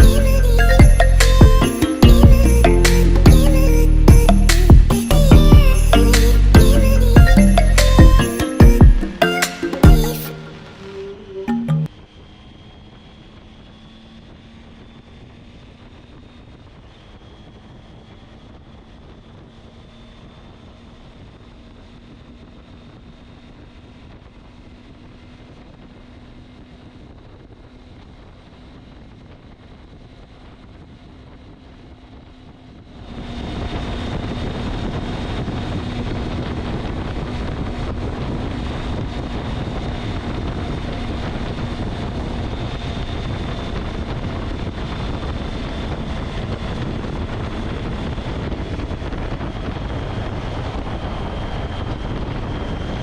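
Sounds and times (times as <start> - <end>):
motor running: 0.0 - 9.1
wind on microphone: 21.9 - 53.0.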